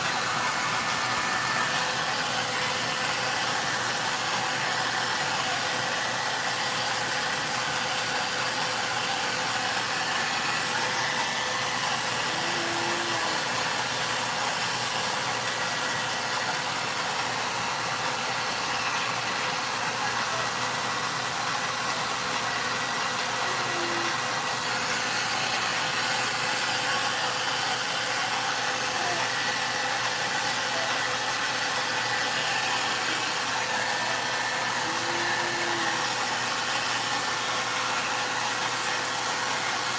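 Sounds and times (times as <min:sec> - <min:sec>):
faint motor whine: 0:00.0 - 0:39.9
hair dryer blowing air: 0:00.0 - 0:39.9.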